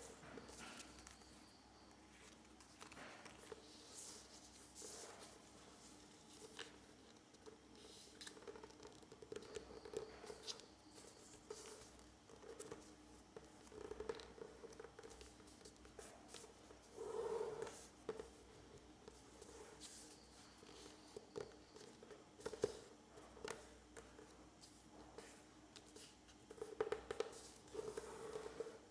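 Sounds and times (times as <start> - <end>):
faint steady hum: 0.0 - 28.9
paper rustling and crinkling: 2.1 - 8.9.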